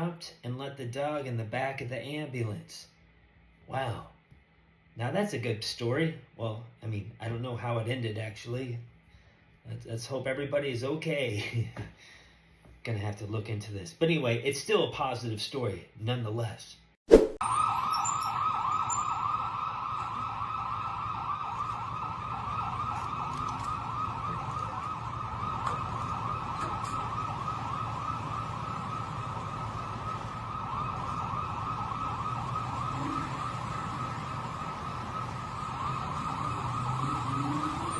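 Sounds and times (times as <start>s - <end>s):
ambulance siren yelping: 17.4s - 37.9s
low vehicle rumble: 17.6s - 37.9s.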